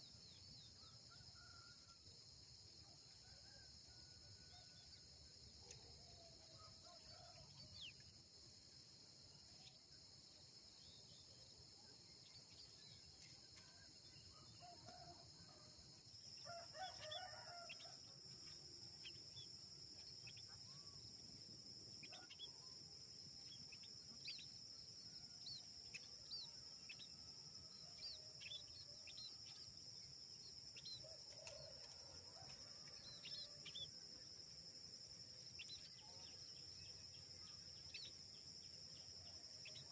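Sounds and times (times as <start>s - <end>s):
high insect drone: 12.0s - 39.9s
rooster crowing: 16.4s - 17.9s.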